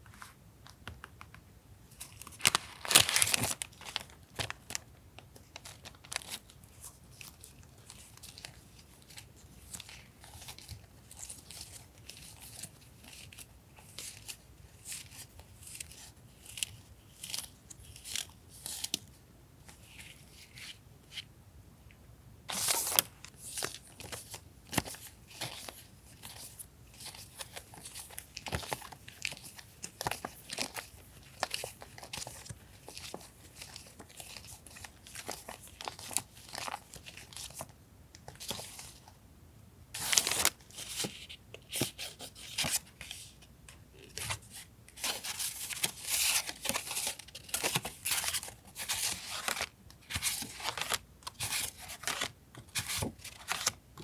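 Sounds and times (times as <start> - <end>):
paper rustling and tearing: 2.2 - 4.5.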